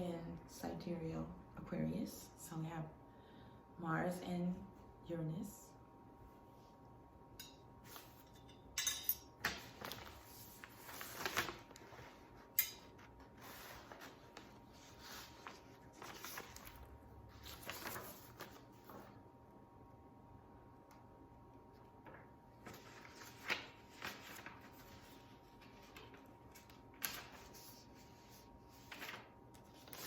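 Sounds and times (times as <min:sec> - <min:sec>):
faint steady hum: 0:00.0 - 0:30.0
rustling handling noise: 0:09.4 - 0:19.1.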